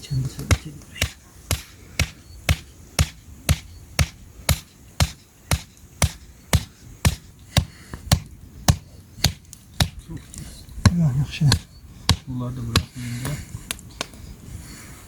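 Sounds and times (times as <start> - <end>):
rhythmic chopping: 0.4 - 10.0.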